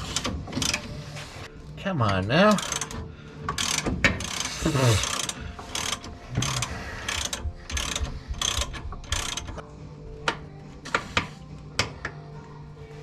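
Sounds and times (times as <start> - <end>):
ratchet wrench clicking: 2.5 - 9.6.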